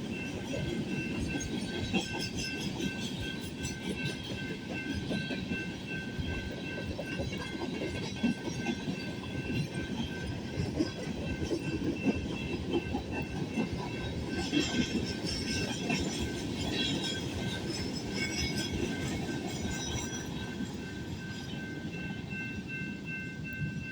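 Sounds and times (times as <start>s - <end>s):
train rumbling past: 0.0s - 23.9s.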